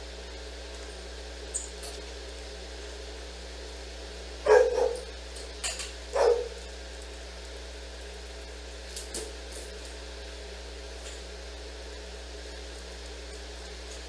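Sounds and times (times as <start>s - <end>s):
dog barking: 4.4s - 5.1s, 6.1s - 6.6s.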